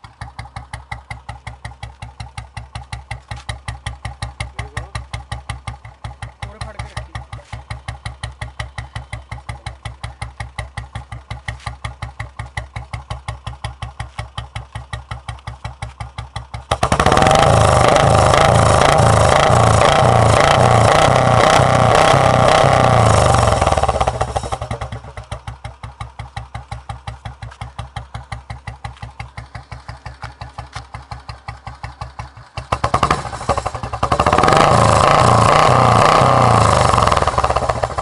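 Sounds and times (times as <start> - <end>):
motorcycle engine idling: 0.0 - 38.0.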